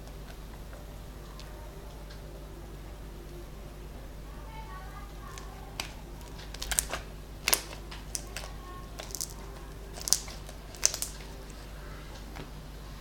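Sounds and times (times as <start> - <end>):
slime clicking and popping: 5.2 - 11.6.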